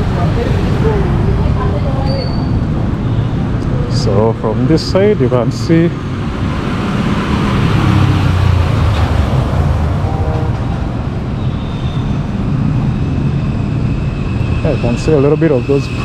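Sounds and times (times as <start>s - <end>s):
road traffic passing: 0.0s - 16.0s.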